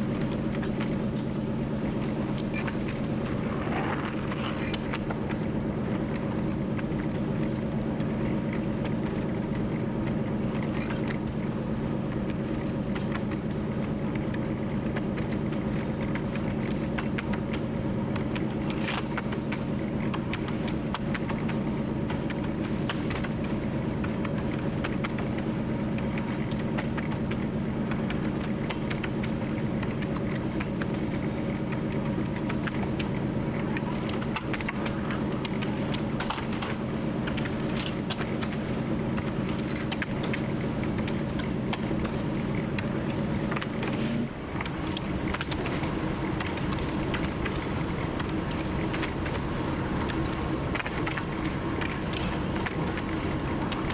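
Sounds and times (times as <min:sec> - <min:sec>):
diesel locomotive engine running: 0:00.0 - 0:53.9
running gear clicks and rattles: 0:02.0 - 0:05.4, 0:14.9 - 0:53.9.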